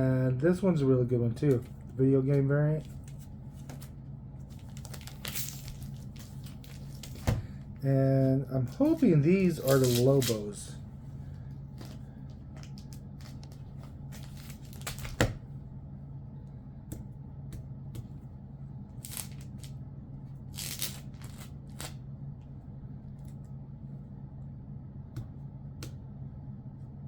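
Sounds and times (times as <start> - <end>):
steady low hum: 0.0 - 27.0
paper and plastic rustling: 2.7 - 7.4, 8.7 - 10.7.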